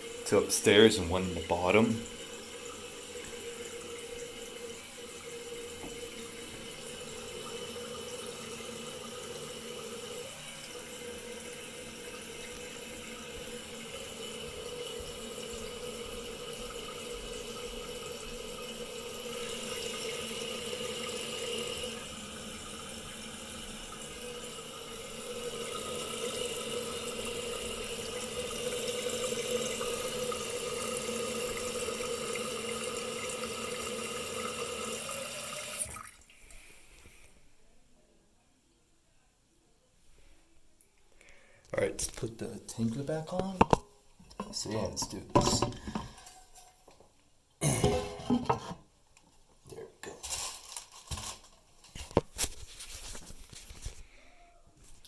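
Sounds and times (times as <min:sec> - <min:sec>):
toilet tank refilling water hissing: 0:00.0 - 0:37.3, 0:41.8 - 0:46.6, 0:47.6 - 0:48.9.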